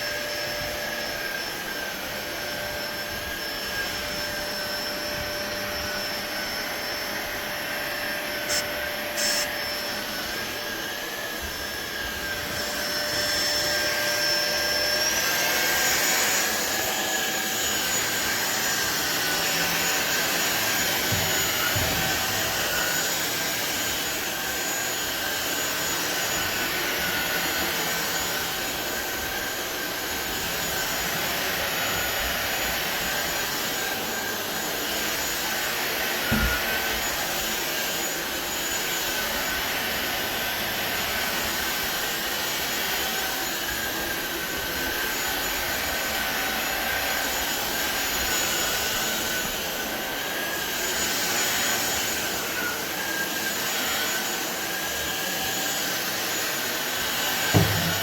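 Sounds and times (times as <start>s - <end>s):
stick vacuum running: 0.0s - 58.0s
thump: 57.5s - 58.0s.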